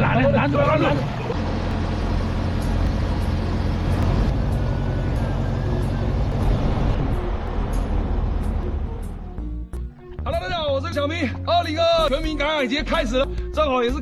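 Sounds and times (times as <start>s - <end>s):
engine running with low rumble: 0.0s - 9.9s.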